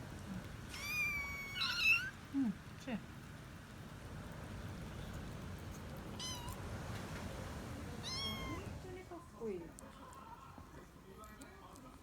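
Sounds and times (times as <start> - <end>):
kitten mewing: 0.7 - 2.2, 8.0 - 8.7.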